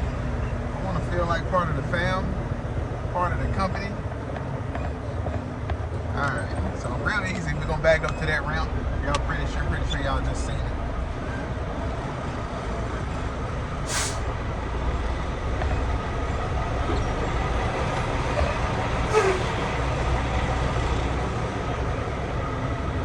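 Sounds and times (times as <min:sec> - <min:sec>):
diesel truck engine running: 0:10.7 - 0:23.0
air brake hisses: 0:13.9 - 0:14.3, 0:19.1 - 0:19.8.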